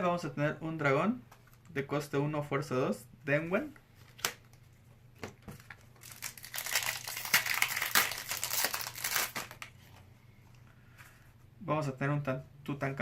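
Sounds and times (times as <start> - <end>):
wrapper crinkling: 5.6 - 9.8.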